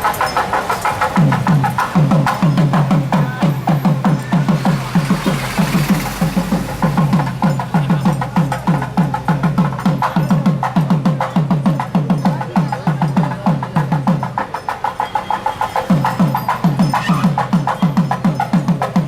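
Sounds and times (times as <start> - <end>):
sharp clicking drum strokes: 0.0 - 19.0
low drum strokes: 1.3 - 9.9.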